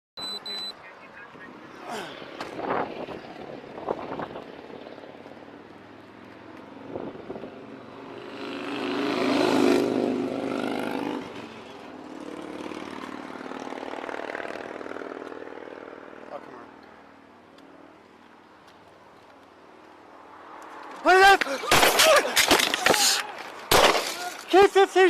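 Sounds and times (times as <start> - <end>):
vehicle passing by: 1.0 - 17.3
faint steady engine hum: 11.5 - 20.2.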